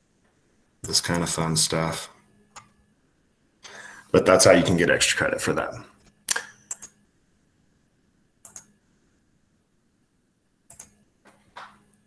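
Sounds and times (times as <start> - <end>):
computer keys and mouse clicks: 2.5 - 2.7, 6.3 - 7.0, 8.4 - 8.7, 10.7 - 11.8.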